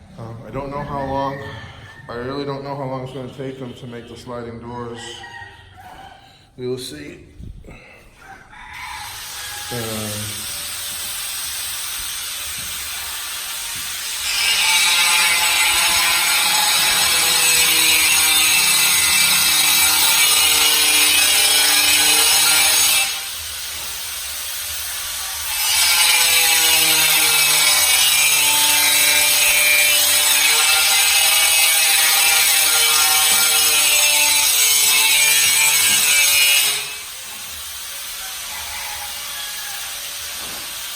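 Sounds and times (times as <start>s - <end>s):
power saw cutting tile: 12.1s - 37.4s, 38.4s - 40.9s.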